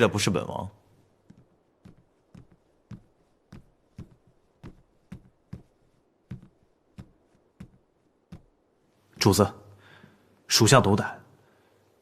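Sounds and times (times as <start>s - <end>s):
footsteps walking: 1.1s - 9.3s.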